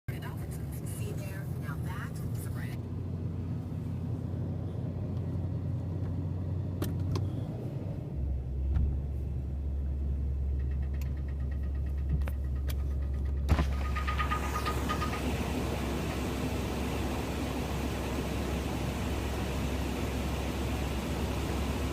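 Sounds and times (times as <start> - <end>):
engine idling: 0.1 - 21.9
sharp engine clicks: 10.1 - 15.6.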